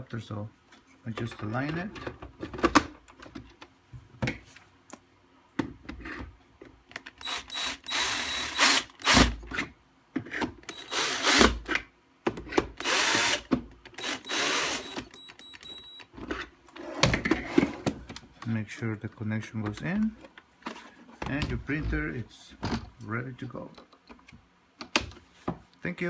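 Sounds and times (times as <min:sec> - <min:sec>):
power screwdriver driving screws: 0:07.2 - 0:09.4, 0:10.7 - 0:11.6, 0:12.8 - 0:15.8.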